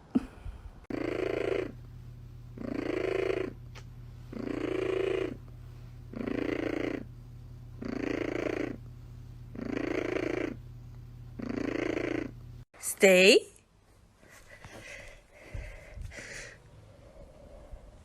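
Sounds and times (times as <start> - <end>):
low hum: 0.0 - 12.7
cat purring: 0.9 - 12.6.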